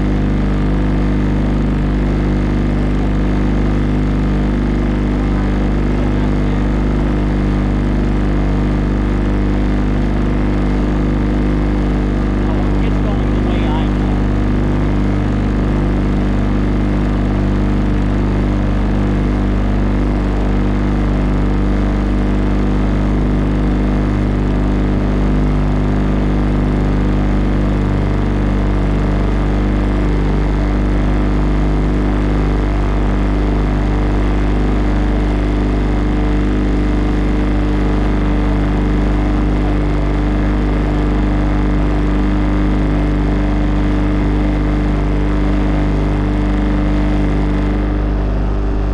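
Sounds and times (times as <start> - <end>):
motorboat engine running: 0.0 - 48.9.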